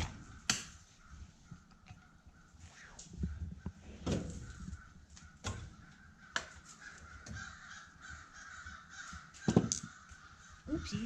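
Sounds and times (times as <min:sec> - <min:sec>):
harsh cawing call: 0:04.8 - 0:11.0.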